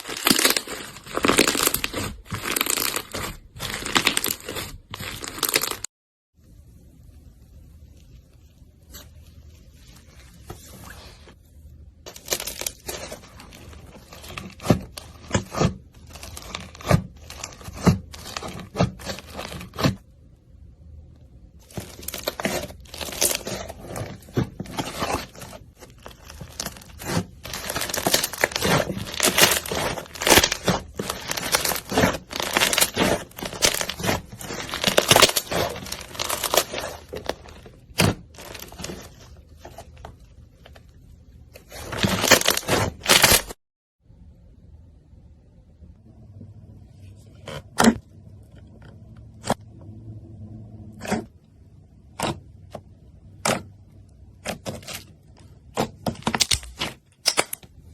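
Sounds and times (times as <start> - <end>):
slime crackling and popping: 0.0 - 5.9, 12.1 - 19.8, 21.7 - 39.2, 41.7 - 43.5.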